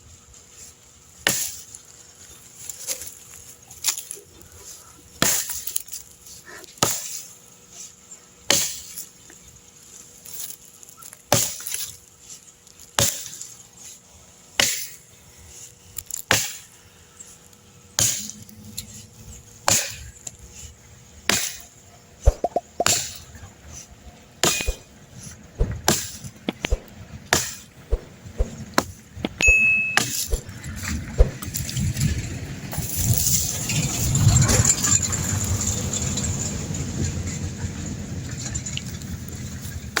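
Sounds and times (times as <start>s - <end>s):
machete chopping wood: 1.3s - 1.6s, 5.2s - 5.7s, 6.8s - 7.2s, 8.5s - 8.9s, 11.3s - 11.8s, 13.0s - 13.3s, 14.6s - 15.0s, 16.3s - 16.6s, 19.7s - 20.1s, 21.3s - 21.6s, 22.3s - 23.2s, 24.4s - 24.9s, 25.6s - 30.6s, 31.2s - 31.5s
low rumble: 25.6s - 25.9s.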